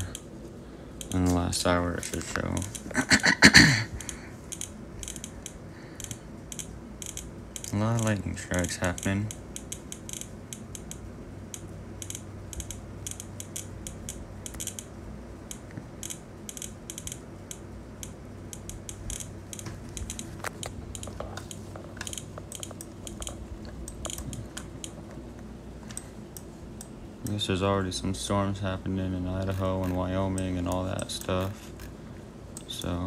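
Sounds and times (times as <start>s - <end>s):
rapid irregular alert ticking: 0.0s - 25.1s.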